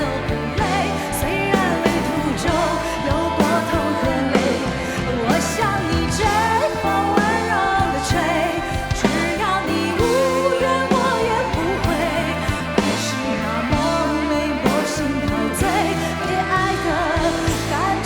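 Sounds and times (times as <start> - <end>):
live pop-rock band: 0.0 - 18.0
person singing: 0.0 - 18.0.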